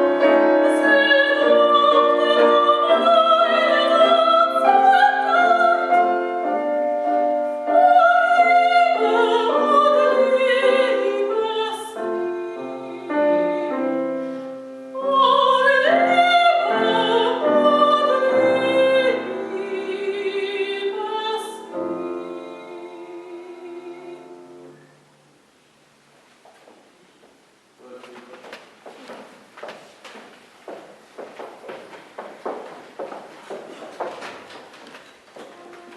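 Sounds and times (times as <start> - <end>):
piano accompaniment: 0.0 - 24.8, 30.8 - 35.9
soprano singing: 0.0 - 25.0.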